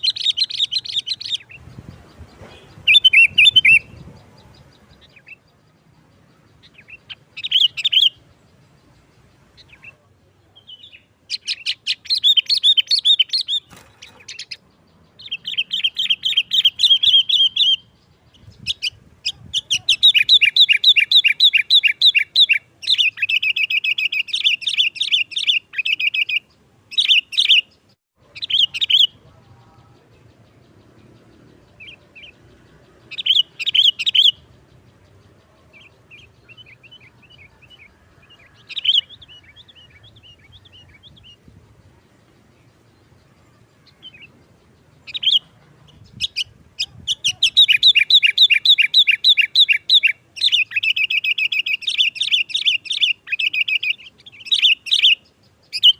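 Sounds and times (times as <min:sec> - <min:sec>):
bulbul chattering song: 0:00.0 - 0:55.9.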